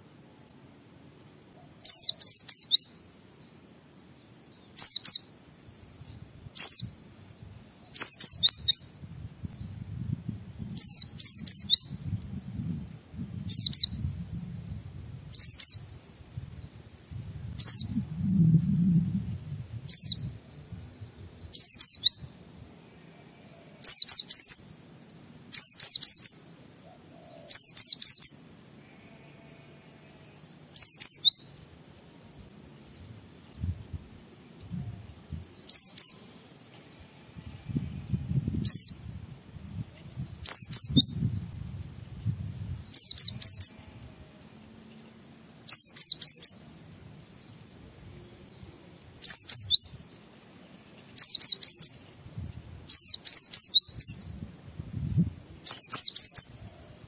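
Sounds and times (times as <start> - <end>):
bird singing high bursts: 1.8 - 3.6, 4.3 - 9.0, 10.8 - 12.2, 13.5 - 16.2, 19.7 - 22.5, 23.8 - 26.6, 30.4 - 31.6, 35.4 - 36.3, 40.2 - 41.5, 42.7 - 44.0, 45.7 - 46.8, 49.2 - 50.2, 51.2 - 54.4, 55.6 - 56.8
faint low rumble: 8.6 - 21.6.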